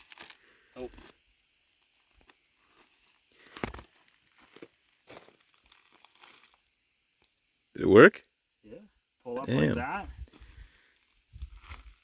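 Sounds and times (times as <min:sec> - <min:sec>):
soft crunches and rustles: 0:00.0 - 0:01.2, 0:01.8 - 0:06.8, 0:10.3 - 0:12.0.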